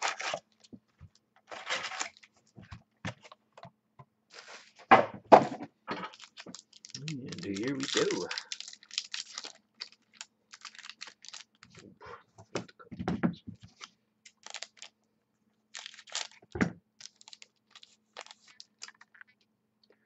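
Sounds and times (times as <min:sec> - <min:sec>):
wrappers tearing and crinkling: 0:00.0 - 0:00.6, 0:01.5 - 0:02.3, 0:06.0 - 0:11.8, 0:13.7 - 0:14.9, 0:15.7 - 0:16.4, 0:17.0 - 0:19.2.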